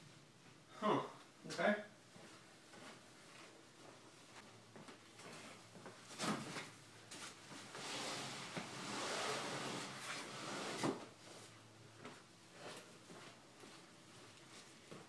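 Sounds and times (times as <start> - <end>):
furniture scraping and sliding: 7.5 - 11.5.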